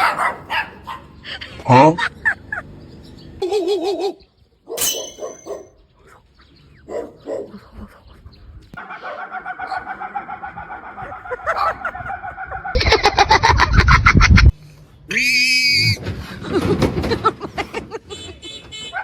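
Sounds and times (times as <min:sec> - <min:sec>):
chicken clucking: 0:08.8 - 0:12.8.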